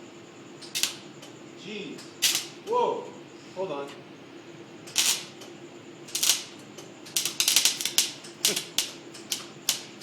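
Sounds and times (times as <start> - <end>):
arc welder crackling: 0.6 - 1.3, 2.2 - 2.7, 4.8 - 10.0.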